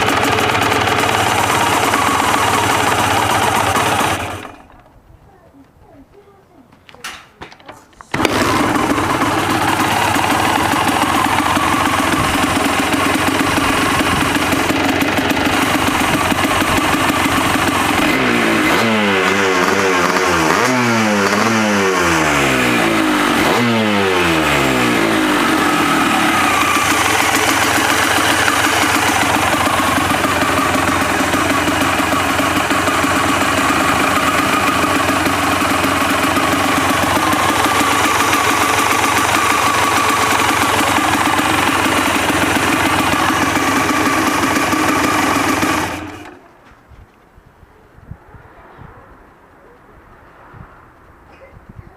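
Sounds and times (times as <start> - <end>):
two-stroke motorcycle engine revving: 0.0 - 4.8, 8.1 - 46.5.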